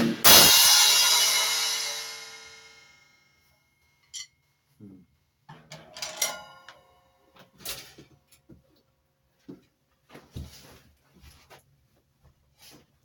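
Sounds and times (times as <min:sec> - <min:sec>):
cymbal struck and ringing: 0:00.0 - 0:03.2
knocks and shuffles: 0:07.4 - 0:13.0.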